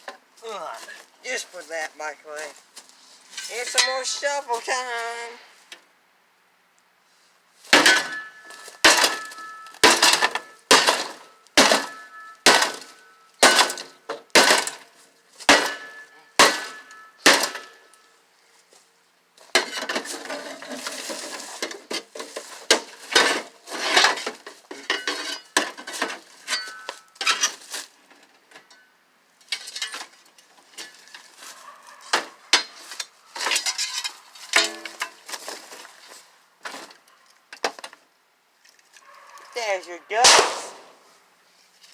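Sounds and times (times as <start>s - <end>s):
shovel striking sheet metal: 7.7s - 14.8s, 15.5s - 17.9s, 40.2s - 41.1s.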